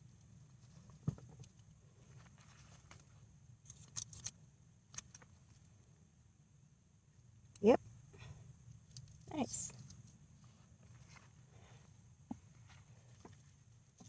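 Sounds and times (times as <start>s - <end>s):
faint knocks and rustles of soil: 0.0s - 5.9s, 8.8s - 14.0s.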